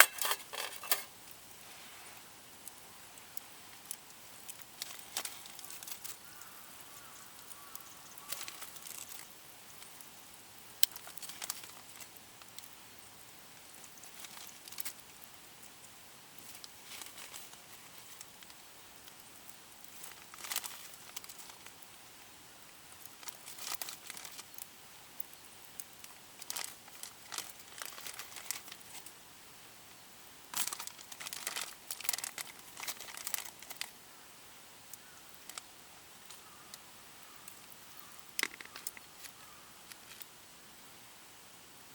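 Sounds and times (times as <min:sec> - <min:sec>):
crinkling and rustling: 0:00.0 - 0:01.1, 0:03.8 - 0:06.5, 0:08.2 - 0:09.3, 0:10.8 - 0:12.7, 0:13.9 - 0:15.0, 0:16.4 - 0:18.6, 0:19.8 - 0:21.8, 0:23.2 - 0:24.6, 0:26.0 - 0:29.1, 0:30.5 - 0:34.0, 0:37.6 - 0:40.3.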